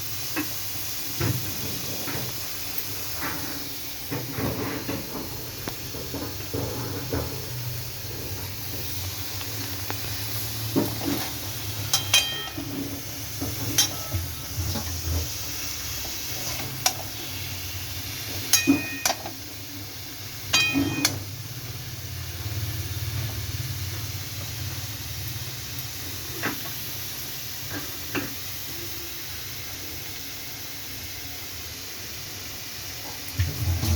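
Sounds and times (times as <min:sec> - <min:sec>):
food sizzling: 0:00.0 - 0:33.9
metal spoon scraping a pan: 0:10.9 - 0:15.0.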